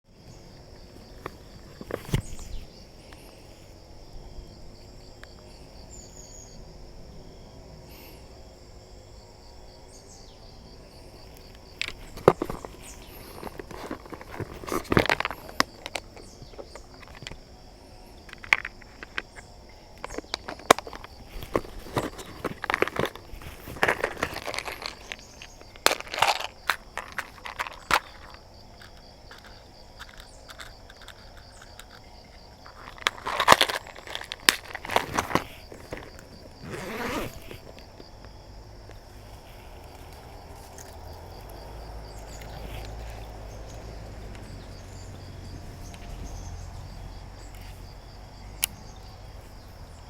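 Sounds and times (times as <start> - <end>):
insects chirping: 0.0 - 50.0
knocks and rustles of handling: 0.3 - 3.4, 11.3 - 17.5, 18.2 - 38.2, 38.9 - 47.8.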